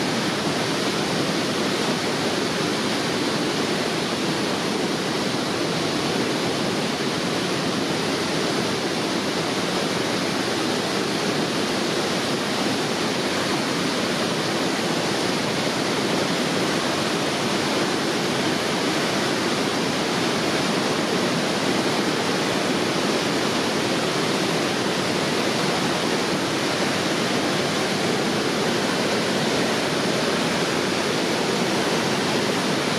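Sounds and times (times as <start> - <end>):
waterfall pouring and splashing: 0.0 - 32.9.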